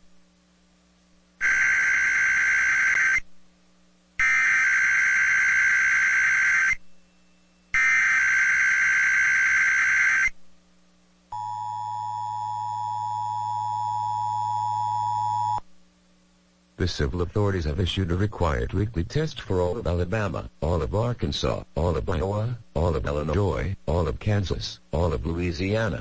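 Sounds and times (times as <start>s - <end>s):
steady two-tone attention signal: 11.3s - 15.6s.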